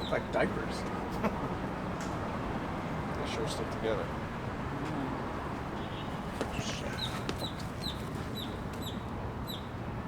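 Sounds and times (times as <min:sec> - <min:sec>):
bird chirping: 0:05.8 - 0:09.7.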